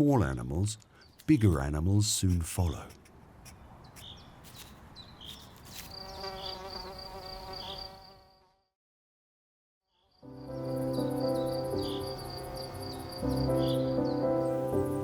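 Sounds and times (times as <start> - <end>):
insects buzzing: 5.3 - 8.7, 10.2 - 15.0.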